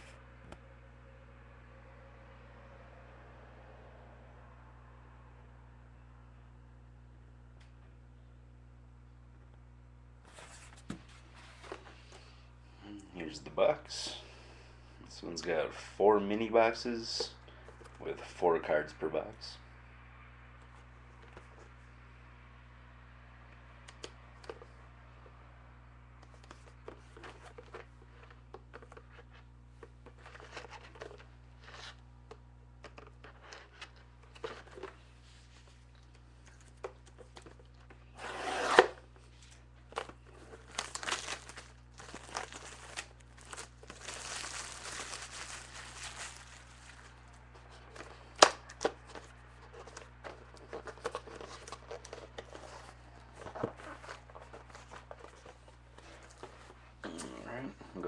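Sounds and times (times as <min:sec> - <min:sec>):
cardboard being handled: 0:39.9 - 0:56.8
plastic shrink wrap tearing: 0:40.4 - 0:47.4.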